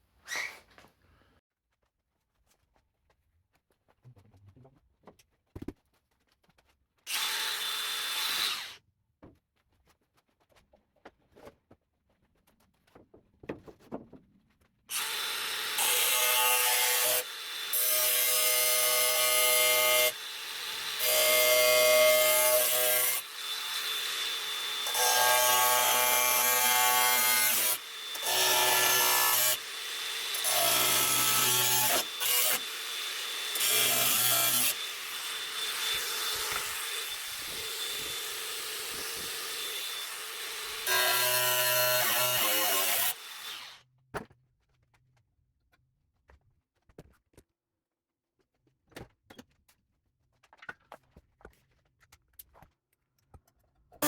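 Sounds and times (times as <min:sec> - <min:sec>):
power tool cutting sheet steel: 0:07.1 - 0:08.8, 0:14.9 - 0:43.8.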